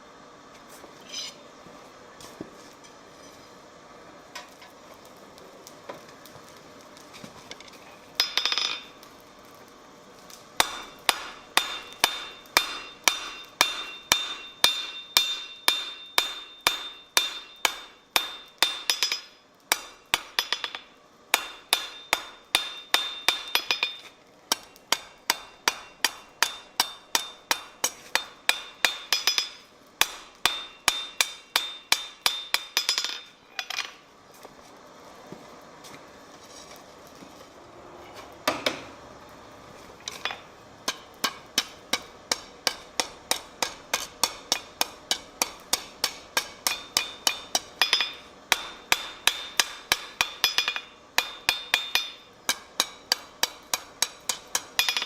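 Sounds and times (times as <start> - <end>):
hammer striking iron on anvil: 8.2 - 8.9, 10.6 - 34.0, 40.1 - 55.0.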